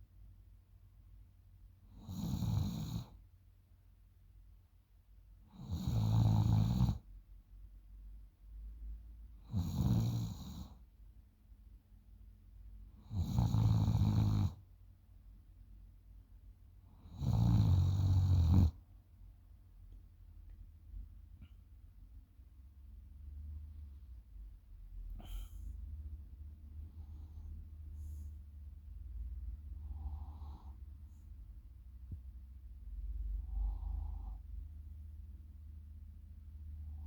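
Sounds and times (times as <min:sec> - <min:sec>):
girl snoring: 0:02.0 - 0:03.0, 0:05.6 - 0:07.0, 0:09.5 - 0:10.7, 0:13.1 - 0:14.5, 0:17.1 - 0:18.8, 0:25.2 - 0:25.6.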